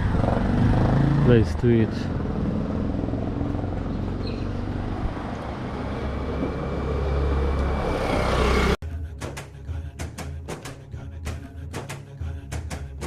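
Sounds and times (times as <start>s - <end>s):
street traffic: 0.0s - 8.8s
vehicle engine rumbling: 0.0s - 8.8s
music with drum hits: 8.8s - 13.0s.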